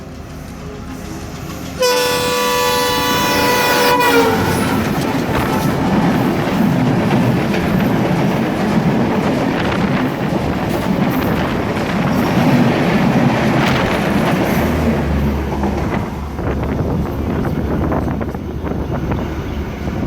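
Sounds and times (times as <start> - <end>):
train rumbling past: 0.0 - 20.0
locomotive horn blast: 1.8 - 5.1.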